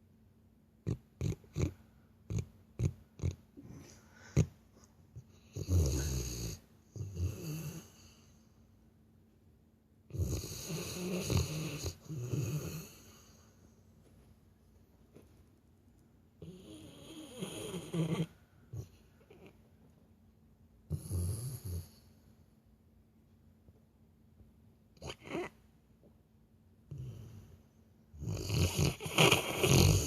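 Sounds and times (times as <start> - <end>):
dog snoring: 0.8 - 4.6, 5.2 - 8.4, 10.1 - 13.5, 16.4 - 19.6, 20.9 - 22.1, 25.0 - 25.6, 26.9 - 27.6, 28.2 - 30.0
dog snorting: 0.8 - 4.6, 16.4 - 19.6, 25.0 - 25.5, 28.2 - 30.0.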